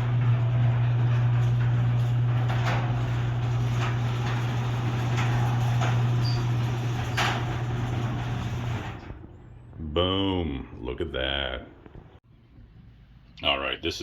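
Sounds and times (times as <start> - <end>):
garage door opener motor humming: 0.0 - 9.7
door clicks and clanks: 0.1 - 9.2.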